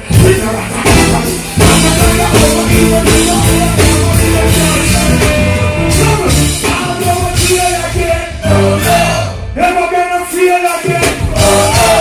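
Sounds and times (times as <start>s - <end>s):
live reggae band: 0.0s - 12.0s.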